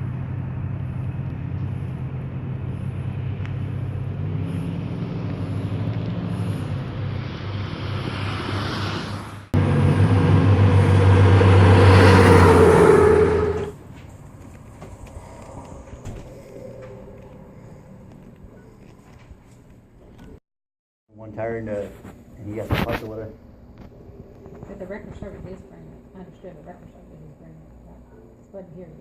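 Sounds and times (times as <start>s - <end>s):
car engine running: 0.0s - 8.2s, 9.5s - 13.7s
road noise: 0.0s - 20.0s.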